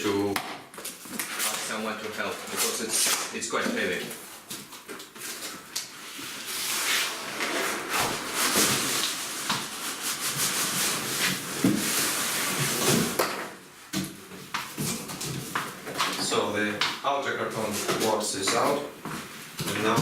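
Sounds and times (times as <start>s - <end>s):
cardboard scraping: 3.8s - 13.2s.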